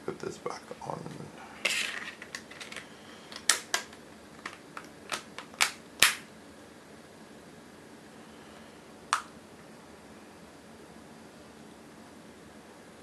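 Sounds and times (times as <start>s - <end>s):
plastic clips snapping: 2.3s - 6.3s.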